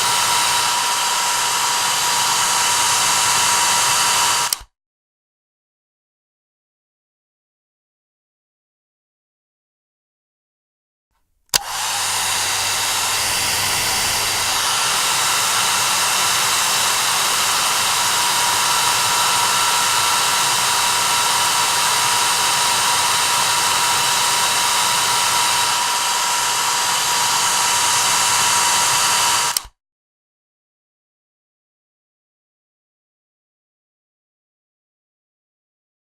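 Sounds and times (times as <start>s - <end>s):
hair dryer blowing: 0.0s - 4.7s, 11.5s - 29.7s
hair dryer switch click: 0.1s - 4.7s, 11.5s - 20.0s, 24.8s - 29.7s.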